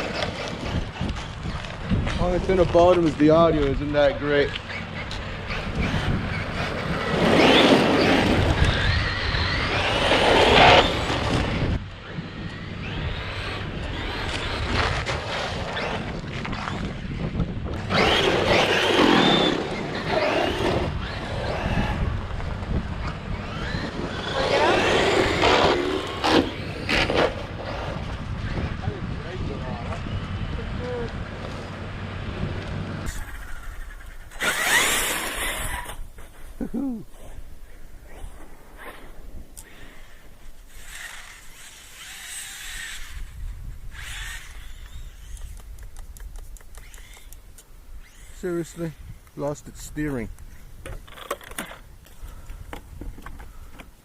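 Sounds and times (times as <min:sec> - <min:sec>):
wind rumble on microphone: 0:00.0 - 0:54.0
electric motor whine revving: 0:03.5 - 0:28.8, 0:29.7 - 0:36.2, 0:38.0 - 0:45.9.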